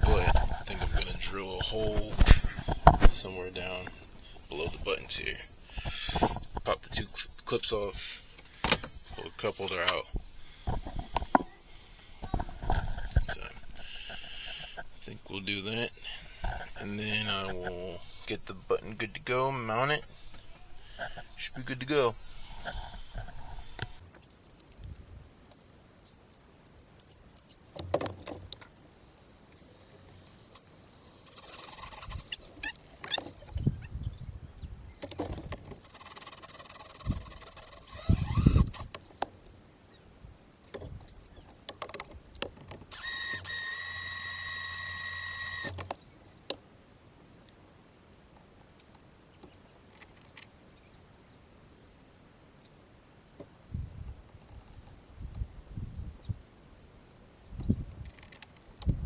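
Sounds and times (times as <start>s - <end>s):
parts clicking and knocking: 25.5s - 28.8s, 30.6s - 32.4s, 35.0s - 39.3s, 40.7s - 46.6s
power drill boring plastic: 31.2s - 32.4s, 35.8s - 38.9s, 42.9s - 45.8s.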